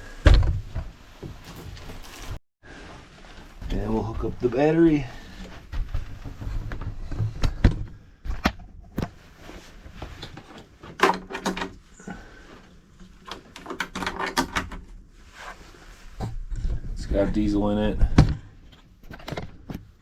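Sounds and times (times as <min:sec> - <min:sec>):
hardware clicks and knocks: 0:10.1 - 0:11.8, 0:13.2 - 0:14.9, 0:18.0 - 0:20.0.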